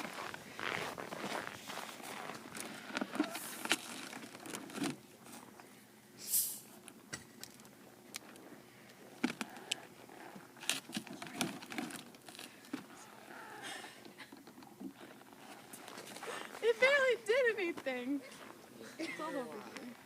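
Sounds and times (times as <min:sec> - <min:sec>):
short hiss: 0:06.2 - 0:06.8.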